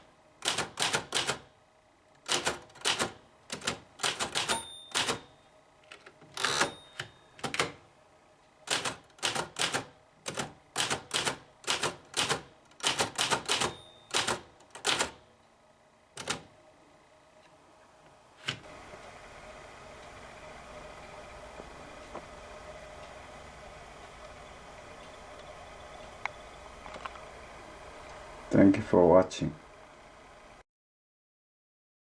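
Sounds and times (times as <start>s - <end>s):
typewriter keystrokes: 0.4s - 1.5s, 2.2s - 5.3s, 8.7s - 15.2s, 16.2s - 16.5s.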